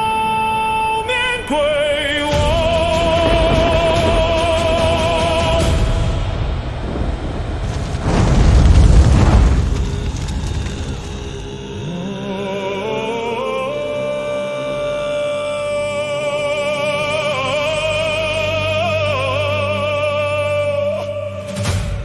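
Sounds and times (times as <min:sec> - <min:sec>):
wordless singing with vibrato: 0:00.0 - 0:08.2, 0:09.5 - 0:22.0
epic music: 0:00.0 - 0:22.0
low drone: 0:00.0 - 0:22.0
sudden crash: 0:01.6 - 0:12.0.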